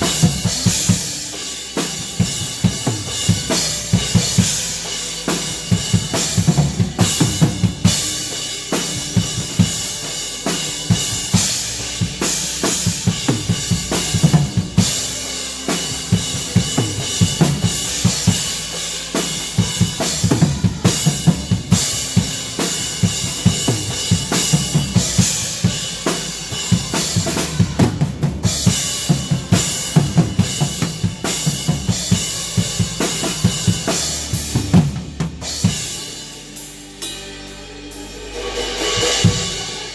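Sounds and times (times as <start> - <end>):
cymbal wash: 35.5 - 39.9.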